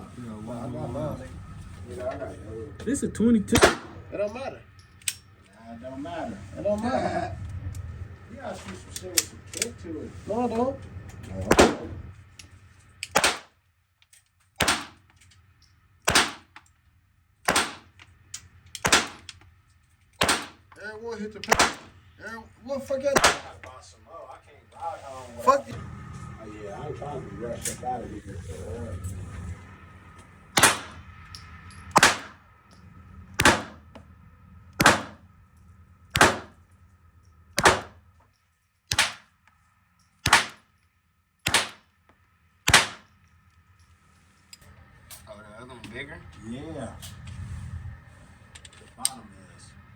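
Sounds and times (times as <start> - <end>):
gunshots echoing indoors: 3.5 - 4.1, 11.5 - 12.0, 13.1 - 13.5, 14.6 - 15.0, 16.1 - 16.5, 17.5 - 18.0, 18.8 - 19.3, 20.2 - 20.6, 21.5 - 22.0, 23.1 - 23.6, 30.5 - 31.2, 31.9 - 32.4, 33.3 - 34.0, 34.8 - 35.3, 36.1 - 36.7, 37.6 - 38.0, 38.9 - 39.3, 40.2 - 40.6, 41.4 - 41.9, 42.7 - 43.1.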